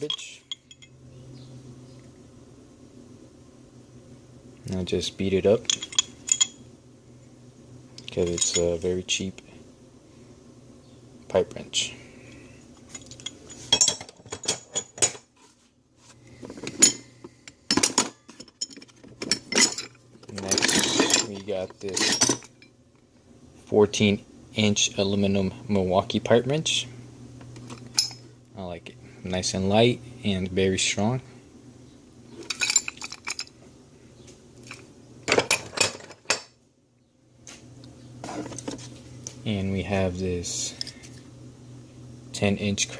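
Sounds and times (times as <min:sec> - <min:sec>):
metal tools clanking: 0:00.0 - 0:01.0, 0:05.6 - 0:06.6, 0:08.1 - 0:08.8, 0:12.9 - 0:15.2, 0:16.5 - 0:22.7, 0:27.6 - 0:28.2, 0:32.4 - 0:33.5, 0:34.7 - 0:36.5
metal wrenches clinking: 0:05.6 - 0:06.6, 0:08.2 - 0:08.8, 0:17.7 - 0:22.6, 0:32.4 - 0:33.5.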